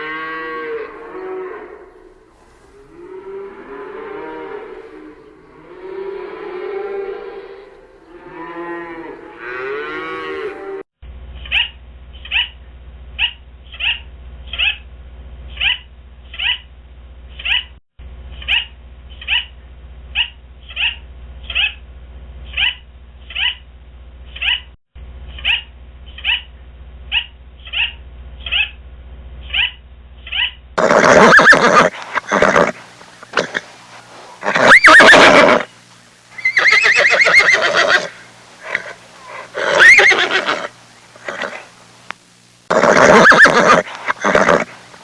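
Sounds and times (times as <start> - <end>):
cow mooing: 0.0 - 10.8, 36.4 - 41.7, 42.7 - 45.0
steady low hum: 10.5 - 17.4, 18.0 - 24.4, 25.0 - 45.0.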